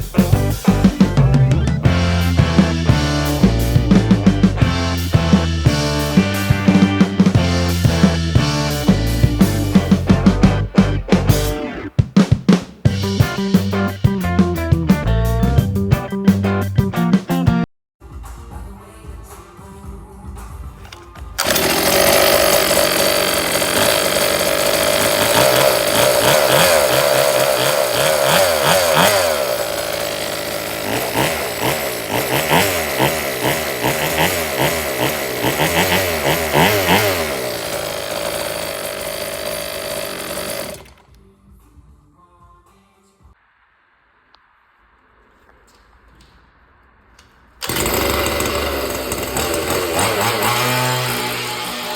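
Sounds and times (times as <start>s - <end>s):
small two-stroke engine revving: 0.1s - 11.6s, 21.4s - 41.1s, 47.6s - 51.9s.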